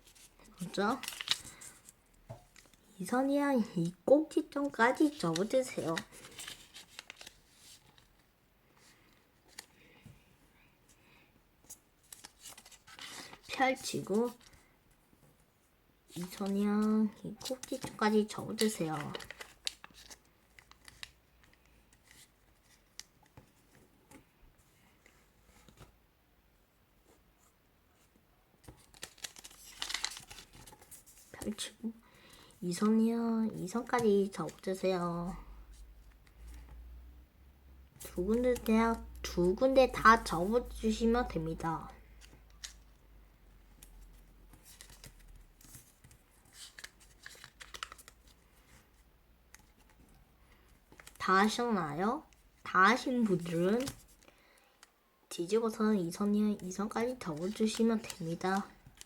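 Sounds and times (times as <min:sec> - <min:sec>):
paper folding rustles and clicks: 0:00.0 - 0:03.0, 0:04.3 - 0:10.1, 0:11.6 - 0:14.7, 0:16.1 - 0:26.0, 0:28.6 - 0:31.8, 0:32.7 - 0:34.8, 0:38.0 - 0:43.0, 0:43.7 - 0:54.3, 0:56.1 - 0:59.0.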